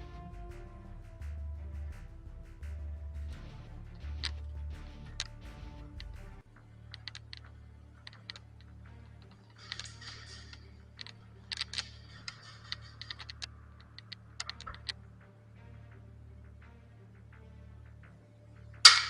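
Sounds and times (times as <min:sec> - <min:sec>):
sharp clicks and snaps: 0:04.0 - 0:15.0.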